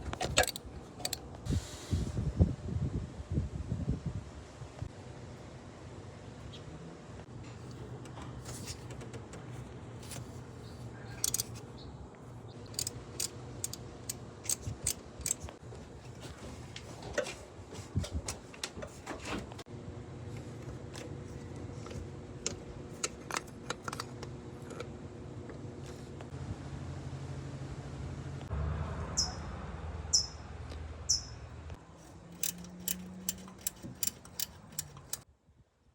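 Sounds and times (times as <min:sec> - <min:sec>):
sharp metallic clicks: 0:00.1 - 0:01.3, 0:11.2 - 0:11.6, 0:12.6 - 0:15.5, 0:32.3 - 0:35.3.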